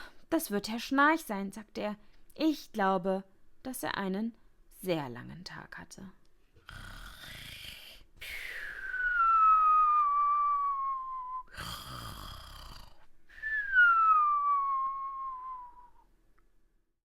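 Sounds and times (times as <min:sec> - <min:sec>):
person imitating snoring: 0:06.6 - 0:08.6, 0:11.5 - 0:13.1
falling whistle: 0:08.5 - 0:11.5, 0:13.4 - 0:16.0.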